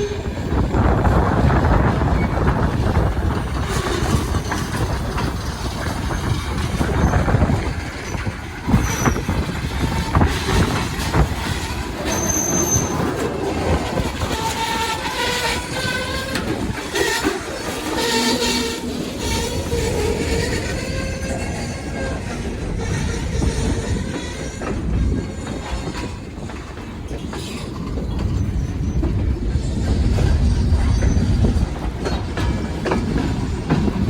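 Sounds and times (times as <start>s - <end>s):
train wheel and rail rumble: 0.0s - 34.0s
high metallic squeal: 8.0s - 13.3s, 14.2s - 25.6s.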